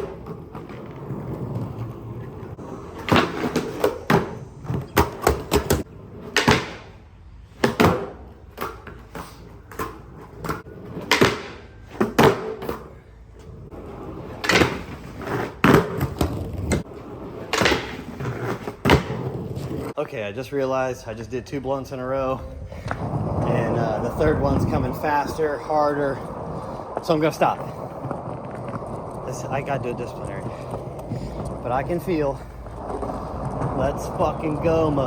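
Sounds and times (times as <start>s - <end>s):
skateboard clacks and knocks: 0.0s - 7.0s, 7.6s - 13.0s, 13.7s - 20.0s, 25.9s - 35.0s
skateboard wheels rolling on concrete: 0.0s - 35.0s.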